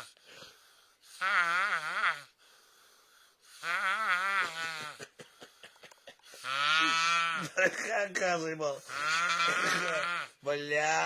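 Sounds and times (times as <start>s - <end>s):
person snoring with bleat-like tone: 1.1s - 2.4s, 3.5s - 5.0s, 6.4s - 7.5s, 8.8s - 11.0s.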